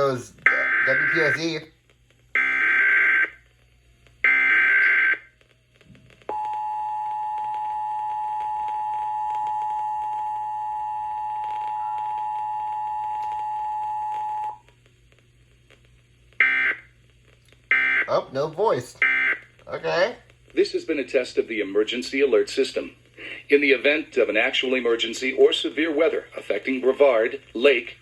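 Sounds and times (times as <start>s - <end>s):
raspy data tone bursts: 0.0s - 1.6s.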